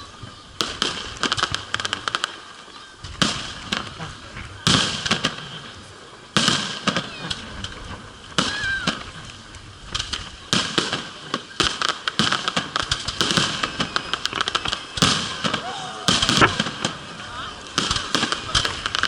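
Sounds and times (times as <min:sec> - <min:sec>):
firework crackling: 0:00.0 - 0:19.0
fireworks bursting with loud bangs: 0:00.0 - 0:19.0.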